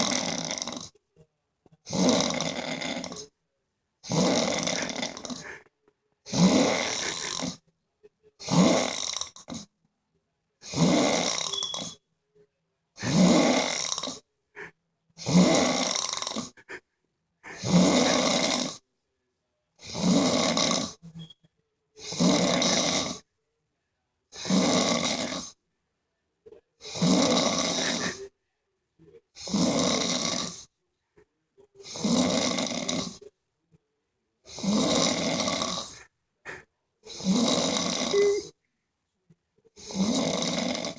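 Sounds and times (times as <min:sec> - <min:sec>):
person snoring: 0:00.0 - 0:00.9, 0:01.8 - 0:03.3, 0:04.0 - 0:05.6, 0:06.3 - 0:07.6, 0:08.4 - 0:09.7, 0:10.6 - 0:12.0, 0:13.0 - 0:16.8, 0:17.4 - 0:18.8, 0:19.8 - 0:21.0, 0:22.0 - 0:23.3, 0:24.3 - 0:25.6, 0:26.8 - 0:28.3, 0:29.4 - 0:30.7, 0:31.8 - 0:33.3, 0:34.5 - 0:38.6, 0:39.8 - 0:40.9.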